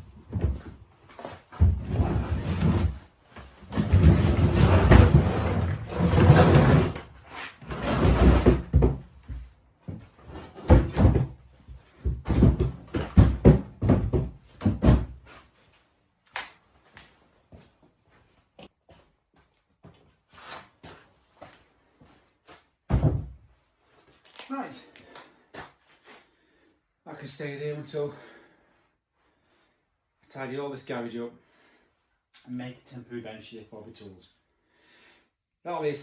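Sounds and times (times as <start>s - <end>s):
wooden cupboards scraping: 0.3s - 11.4s, 12.0s - 15.2s
wooden knocks and bangs: 7.7s - 11.4s, 12.0s - 15.2s, 22.9s - 23.4s.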